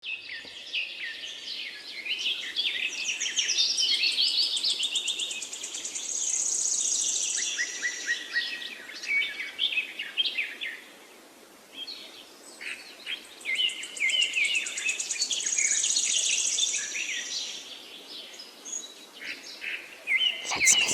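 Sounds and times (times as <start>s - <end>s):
small birds chirping: 20.2s - 20.9s
high buzzing trill: 20.3s - 20.9s.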